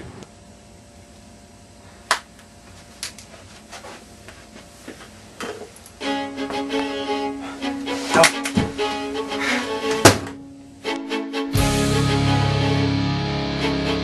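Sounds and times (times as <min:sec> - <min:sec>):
bowed string music: 0:06.0 - 0:14.0.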